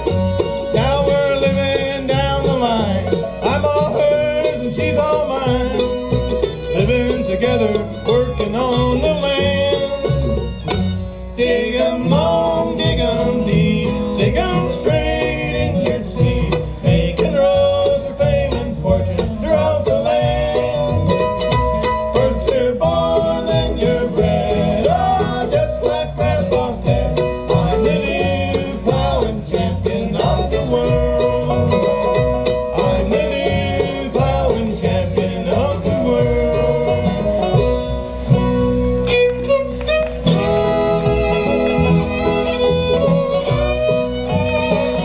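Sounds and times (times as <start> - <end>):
banjo picking: 0.0 - 45.0
bluegrass band playing: 0.0 - 45.0.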